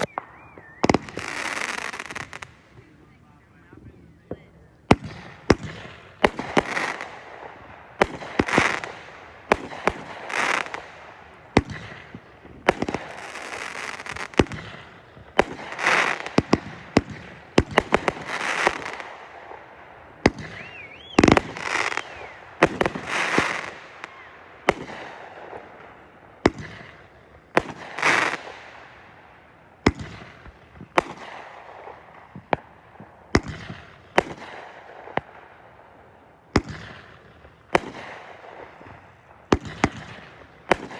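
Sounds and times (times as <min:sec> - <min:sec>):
firework whistle: 0:00.0 - 0:02.3, 0:20.3 - 0:24.4
fireworks bangs: 0:00.0 - 0:40.9
fireworks crackling: 0:00.0 - 0:40.9.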